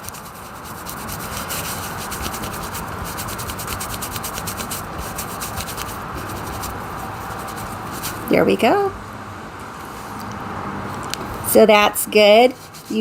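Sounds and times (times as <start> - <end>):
wipe rubbing on skin: 0.0 - 8.4, 12.4 - 13.0.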